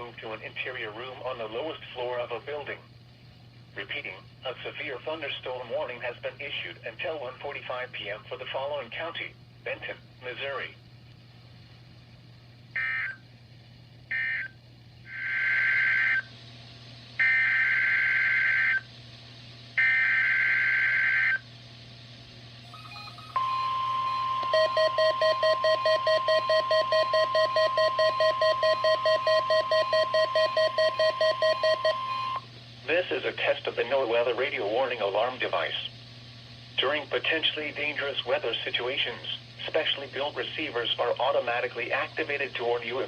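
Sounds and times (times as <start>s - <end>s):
steady alarm tone: 12.8s - 13.2s, 14.1s - 16.3s, 17.2s - 18.9s, 19.8s - 21.4s, 22.6s - 32.5s
screeching data bursts: 22.6s - 32.4s
low pulsing beep: 22.7s - 32.4s.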